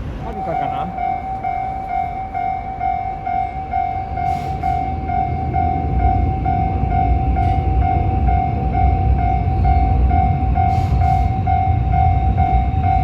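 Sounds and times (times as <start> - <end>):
train rumbling past: 0.0 - 13.0
level crossing warning bell: 0.2 - 13.0.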